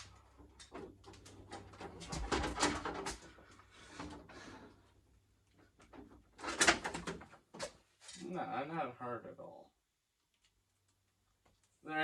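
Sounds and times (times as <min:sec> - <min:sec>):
power cord rustling and knocking: 0:00.7 - 0:03.4.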